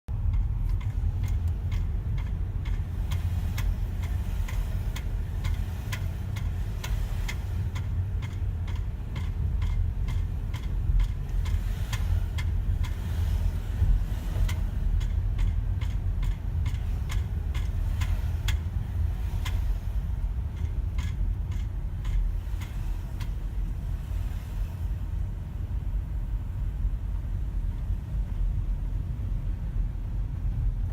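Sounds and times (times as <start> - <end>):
low vehicle rumble: 0.0 - 30.9
rapid regular clicking: 0.2 - 13.4, 14.4 - 23.5.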